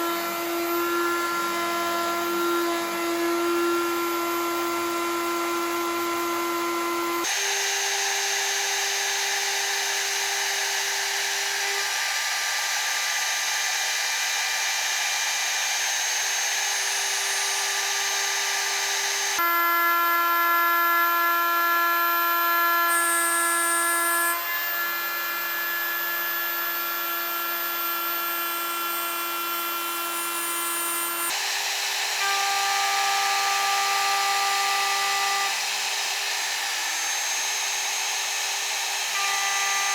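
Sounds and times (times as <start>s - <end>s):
milling spindle whine: 7.3s - 19.4s.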